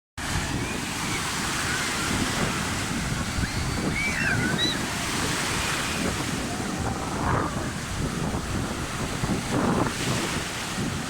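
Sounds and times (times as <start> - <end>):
sea surf washing: 0.2 - 11.0
wind buffeting microphone: 0.2 - 11.0
faint high-pitched wavering calls: 3.4 - 4.9.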